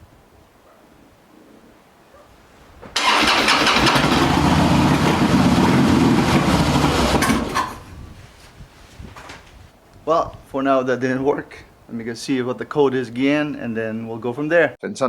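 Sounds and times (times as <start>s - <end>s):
motorcycle engine starting and running: 3.0s - 7.9s.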